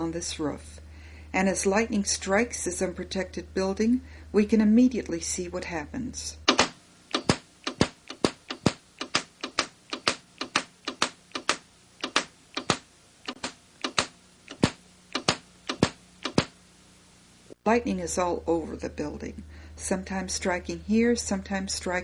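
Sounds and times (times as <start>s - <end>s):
electric sparks snapping: 6.5s - 16.6s.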